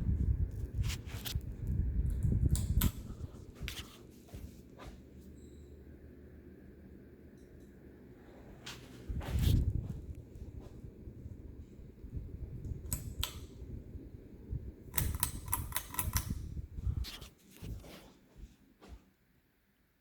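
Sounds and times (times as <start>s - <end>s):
ceiling fan rumbling: 0.0s - 19.7s
rattling clicks: 15.0s - 16.4s.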